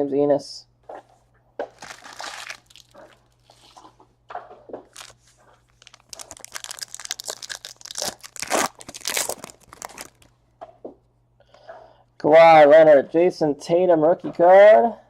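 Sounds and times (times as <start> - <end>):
card pack wrapper tearing and crinkling: 1.7 - 3.9, 4.9 - 10.3.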